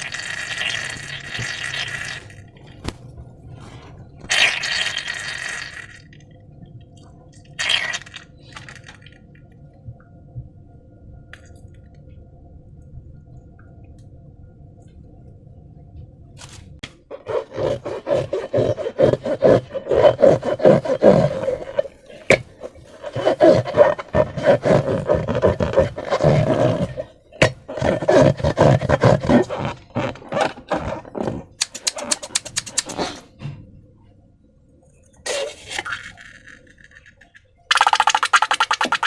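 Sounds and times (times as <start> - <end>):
balloon squeaking when rubbed: 17.1 - 33.2.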